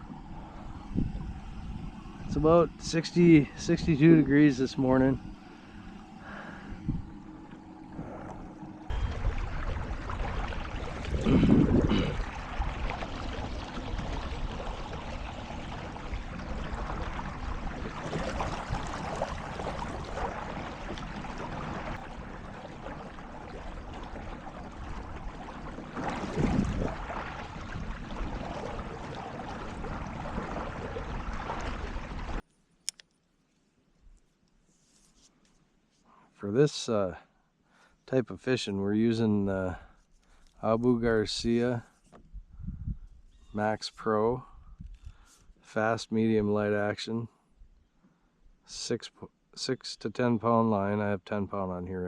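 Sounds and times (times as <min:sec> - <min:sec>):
wind gusts on microphone: 0:00.0 - 0:05.3, 0:06.7 - 0:07.2, 0:08.9 - 0:22.1, 0:26.1 - 0:32.4, 0:42.3 - 0:43.2
water rushing: 0:00.0 - 0:32.4.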